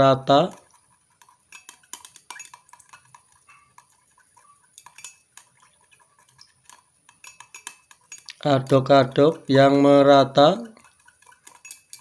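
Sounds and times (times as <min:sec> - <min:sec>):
spoon clinking against glass: 0:01.5 - 0:05.5, 0:06.3 - 0:09.4, 0:10.6 - 0:12.0.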